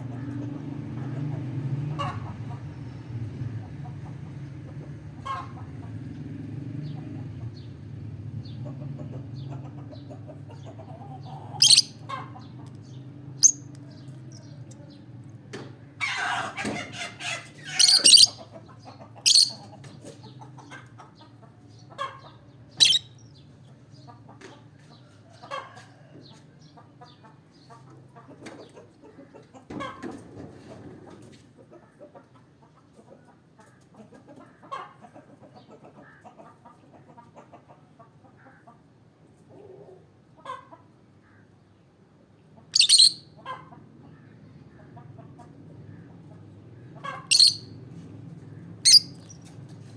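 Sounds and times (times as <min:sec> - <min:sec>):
lovebird chirping: 0:11.6 - 0:12.0, 0:13.4 - 0:13.7, 0:17.8 - 0:18.4, 0:19.2 - 0:19.6, 0:22.8 - 0:23.2, 0:42.8 - 0:43.3, 0:47.3 - 0:47.7, 0:48.8 - 0:49.4.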